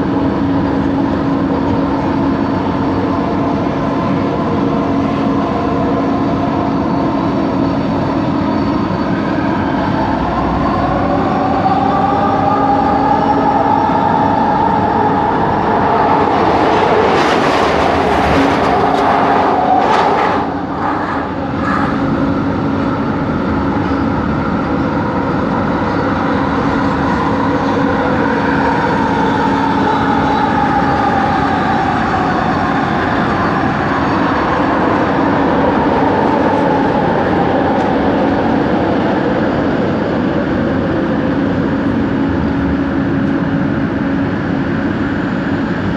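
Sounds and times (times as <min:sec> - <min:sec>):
train rolling noise: 0:00.0 - 0:45.9
low hum: 0:08.6 - 0:27.0.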